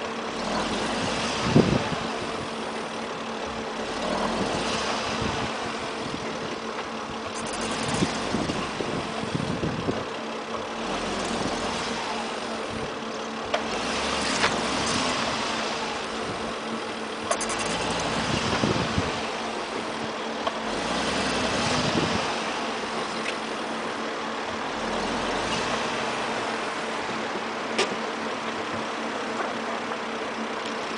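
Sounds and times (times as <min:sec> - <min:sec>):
constant low hum: 0:00.0 - 0:30.9.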